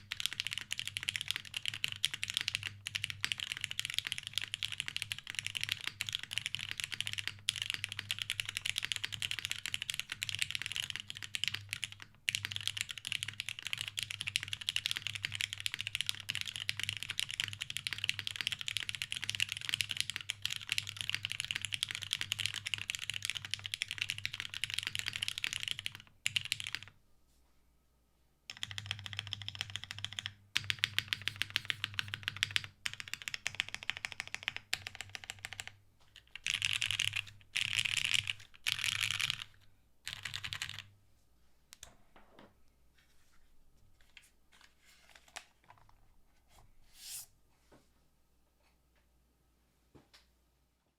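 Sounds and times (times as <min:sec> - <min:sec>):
fast mechanical keyboard typing: 0:00.0 - 0:26.9, 0:28.5 - 0:40.9.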